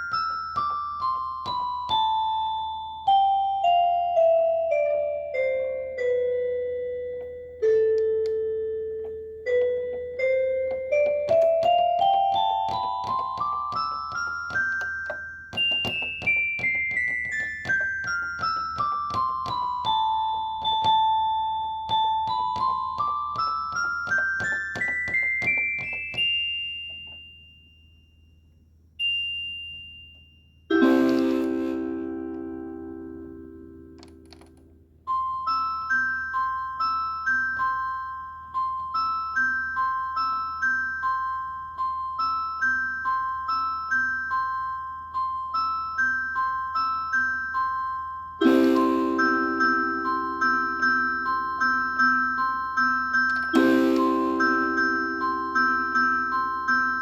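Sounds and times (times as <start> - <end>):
electronic keyboard single notes: 7.0 - 26.4, 30.7 - 34.8, 48.4 - 52.3, 53.2 - 56.6.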